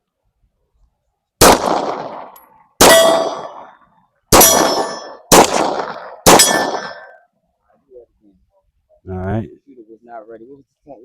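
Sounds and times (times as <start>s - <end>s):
pistol shots: 1.4s - 7.2s
steel targets clanging: 4.4s - 5.2s, 6.3s - 7.2s.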